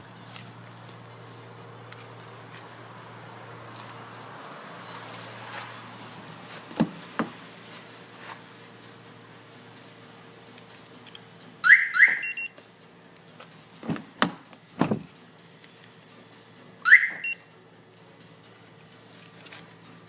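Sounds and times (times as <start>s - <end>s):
car alarm chirps: 11.6s - 12.6s, 16.8s - 17.5s.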